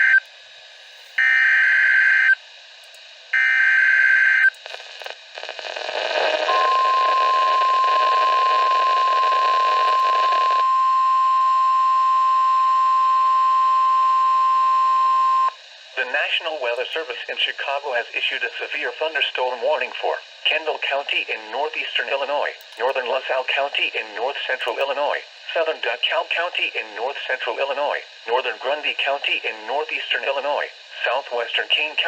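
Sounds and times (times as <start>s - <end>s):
steady warning alarm tone: 1.2s - 2.4s, 6.5s - 15.6s
radio hiss: 4.4s - 32.0s.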